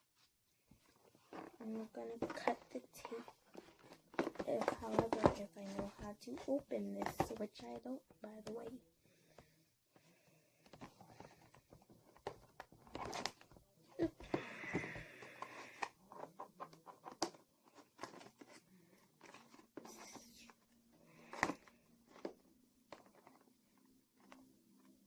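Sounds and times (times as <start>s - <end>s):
clicks and scrapes: 15.2s - 20.3s.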